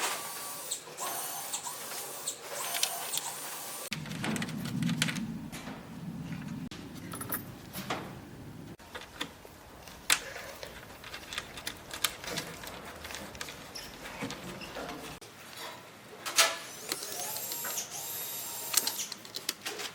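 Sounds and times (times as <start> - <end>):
low hum: 3.9 - 8.8.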